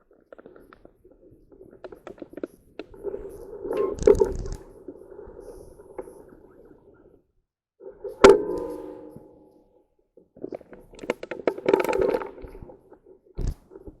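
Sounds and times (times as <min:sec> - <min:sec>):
sharp metallic clank: 0:08.1 - 0:09.7.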